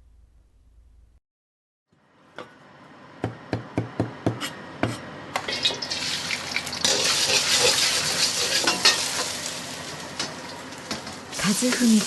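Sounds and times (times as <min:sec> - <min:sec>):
restaurant kitchen sounds: 0:01.9 - 0:12.0
food sizzling in frying: 0:05.4 - 0:12.0.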